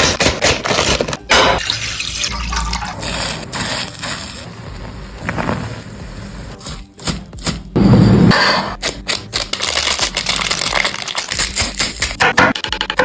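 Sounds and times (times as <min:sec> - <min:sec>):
liquid pouring and splashing: 0:01.6 - 0:03.4.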